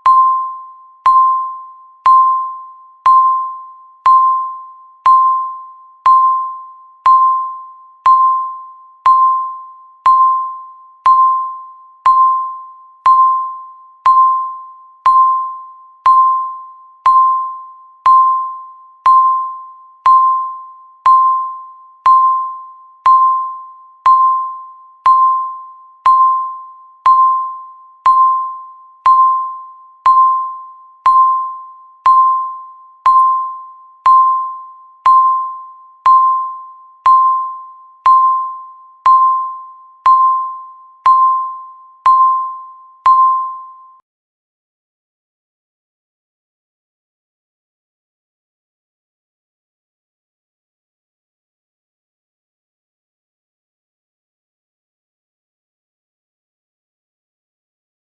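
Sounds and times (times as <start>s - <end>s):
timer beeping chime: 0.0s - 44.0s.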